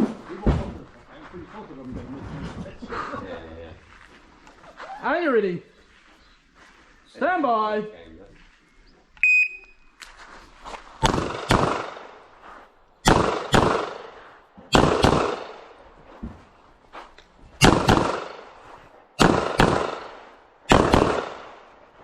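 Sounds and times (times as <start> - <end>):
shot timer beep: 9.2 - 9.9
pistol shots: 11.0 - 12.2, 13.0 - 15.8, 17.6 - 18.6, 19.2 - 21.7.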